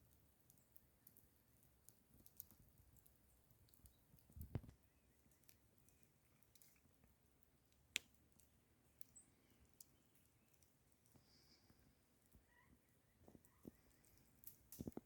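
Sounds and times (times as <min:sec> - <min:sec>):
faint clicks: 0:09.8 - 0:12.4.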